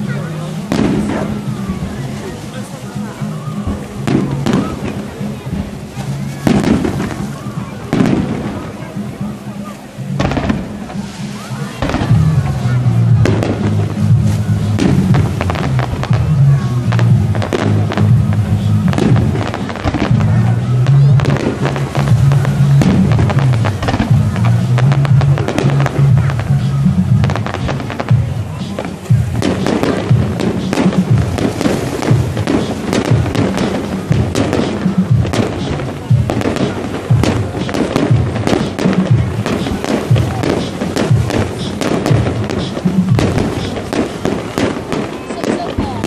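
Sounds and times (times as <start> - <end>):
firework bangs and crackles: 0.0 - 46.0
loud music with bass line: 10.0 - 46.0.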